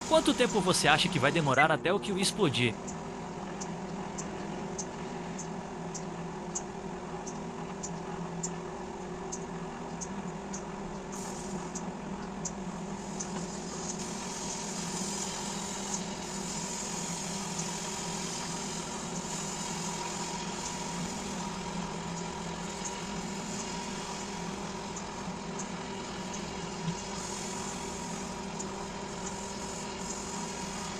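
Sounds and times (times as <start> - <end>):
microwave oven humming: 0.0 - 30.9
faint regular ticking: 2.7 - 8.6.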